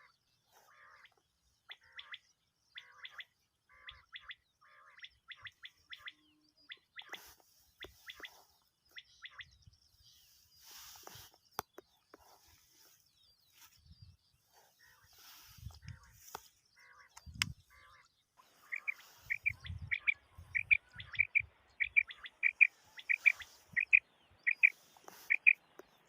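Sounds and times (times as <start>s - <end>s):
quail calling: 0.0s - 8.4s, 9.0s - 9.6s, 14.6s - 25.9s
soft wavering bird calls: 0.0s - 26.0s.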